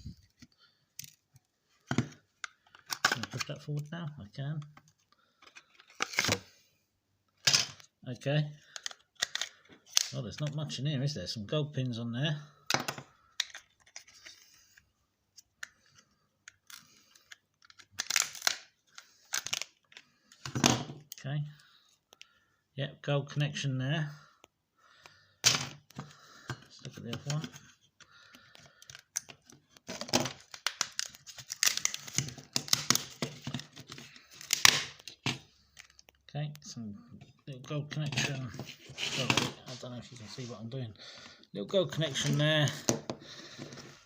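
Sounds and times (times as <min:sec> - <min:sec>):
plastic casing clicking and snapping: 0:01.9 - 0:03.5, 0:08.7 - 0:10.6, 0:28.4 - 0:36.2
plastic clicks and rattles: 0:08.7 - 0:10.2.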